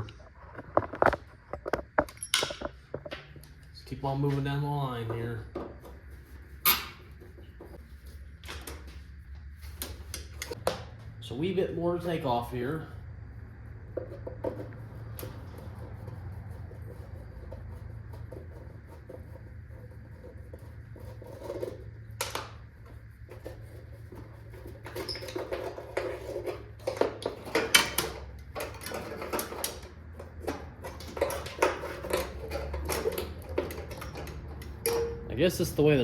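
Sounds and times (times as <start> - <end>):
steady low hum: 0.0 - 36.0
hand tools on metal: 14.0 - 36.0.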